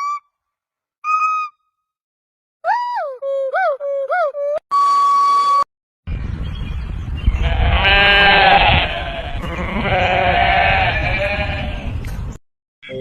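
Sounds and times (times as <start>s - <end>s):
goat bleating: 7.4s - 11.9s.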